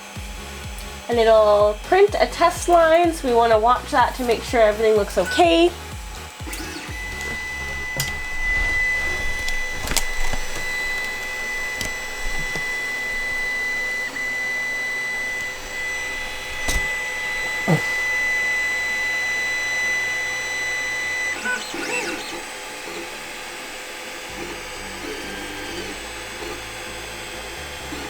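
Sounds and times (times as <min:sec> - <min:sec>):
printer high whine: 0:00.0 - 0:28.0
printer whirring hum: 0:00.0 - 0:28.0
sharp clicks: 0:04.2 - 0:20.1.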